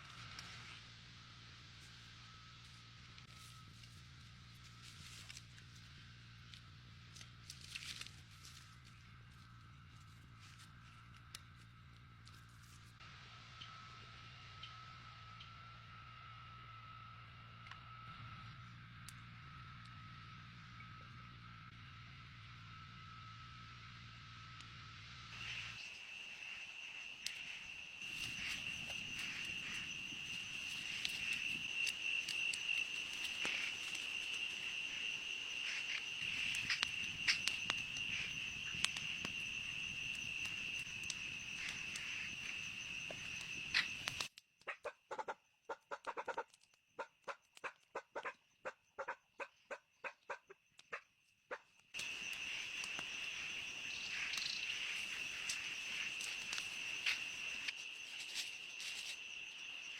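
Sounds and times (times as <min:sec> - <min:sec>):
high-pitched insect chorus: 0:24.9 - 0:44.3, 0:52.0 - 0:59.9.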